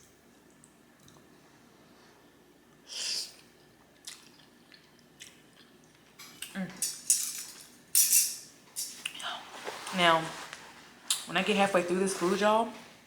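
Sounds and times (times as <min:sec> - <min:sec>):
quiet chewing: 0:03.3 - 0:06.6.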